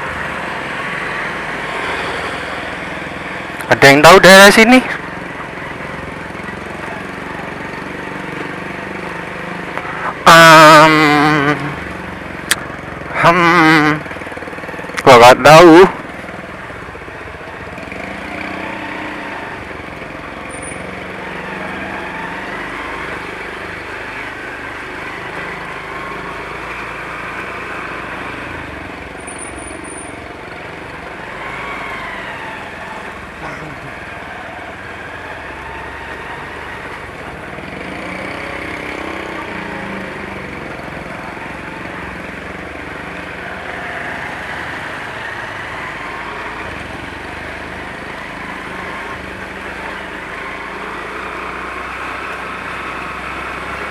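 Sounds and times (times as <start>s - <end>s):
road and wind noise: 0.0s - 53.9s.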